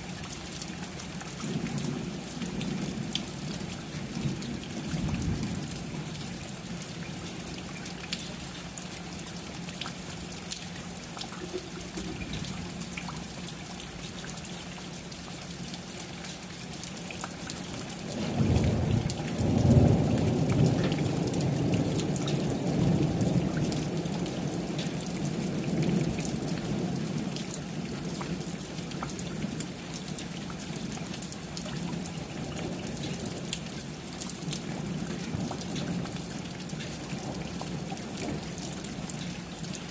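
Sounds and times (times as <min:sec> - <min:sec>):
steady rain pattering: 0:00.0 - 0:39.9
thunder rumbling: 0:18.1 - 0:24.7.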